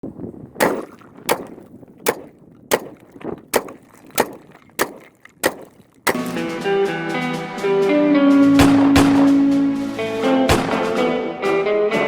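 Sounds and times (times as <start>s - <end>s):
rifle shots with echo: 0.6s - 6.4s, 8.6s - 11.3s.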